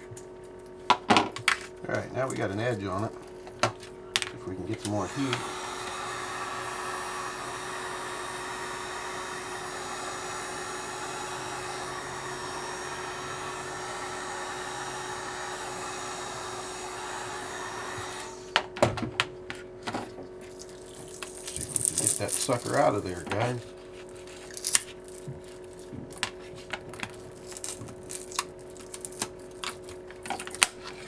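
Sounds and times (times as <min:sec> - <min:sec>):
heat gun blowing: 0:04.4 - 0:18.8, 0:20.4 - 0:30.9.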